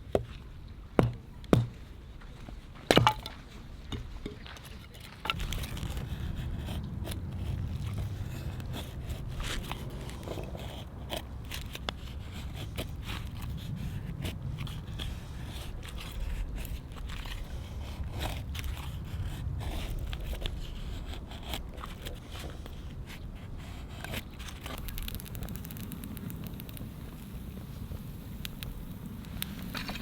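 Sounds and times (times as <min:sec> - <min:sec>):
campfire crackling and popping: 0:05.3 - 0:13.8, 0:24.6 - 0:30.0
low rumble: 0:05.3 - 0:21.4.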